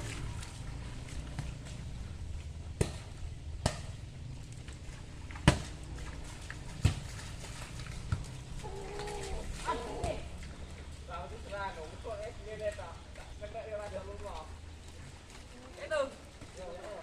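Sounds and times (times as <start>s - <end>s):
volleyball being struck: 2.8s - 4.0s, 5.4s - 5.7s.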